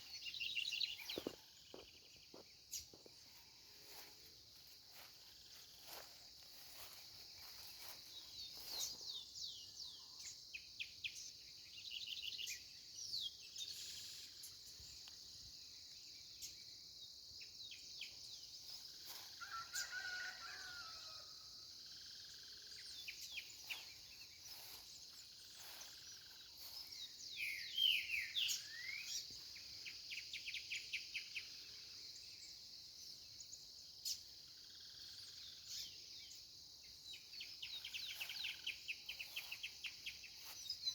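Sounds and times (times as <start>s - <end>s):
high buzz of insects: 0.0s - 9.0s, 21.7s - 40.9s
small birds chirping and singing: 0.0s - 20.3s, 21.8s - 40.9s
rooster crowing: 19.3s - 21.4s.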